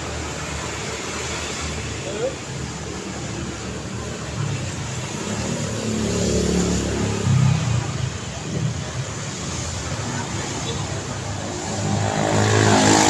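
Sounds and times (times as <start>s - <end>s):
road traffic noise: 0.0s - 13.0s
vehicle engine passing close: 4.8s - 13.0s.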